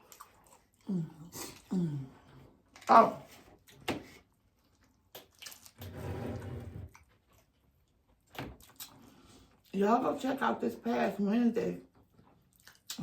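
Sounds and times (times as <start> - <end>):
muffled chewing: 0.0 - 6.0, 6.9 - 9.8, 11.8 - 13.0
wet mouth clicks and smacks: 4.8 - 5.8, 8.3 - 9.0, 12.5 - 13.0.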